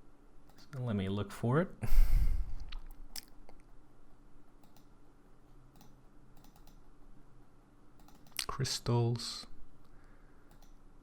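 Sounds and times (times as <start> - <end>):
faint electrical hum: 0.0 - 11.0
mouse and keyboard clicks: 5.7 - 6.8, 8.0 - 8.5.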